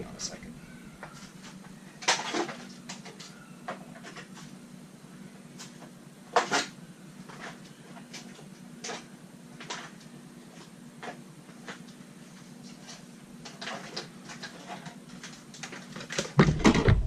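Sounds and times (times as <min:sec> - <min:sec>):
steady low hum: 0:00.0 - 0:15.7
plastic knocks and clunks: 0:16.1 - 0:17.0.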